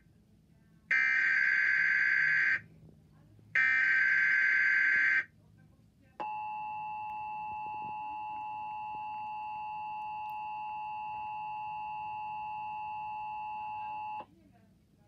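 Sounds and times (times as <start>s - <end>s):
steady two-tone alarm: 0.9s - 2.6s, 3.6s - 5.3s, 6.2s - 14.2s.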